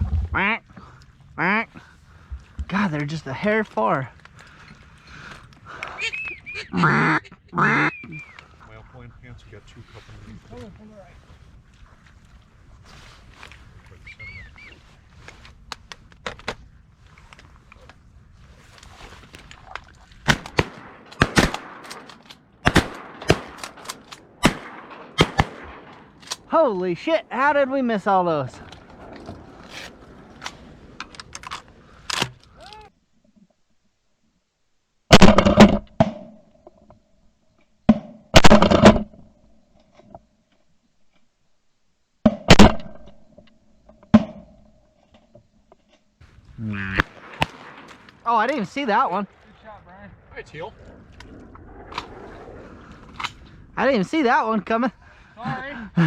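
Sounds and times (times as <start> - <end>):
shotguns firing: 20.2 - 32.4, 35.1 - 36.2, 38.4 - 39.0, 42.5 - 43.0, 46.7 - 50.3.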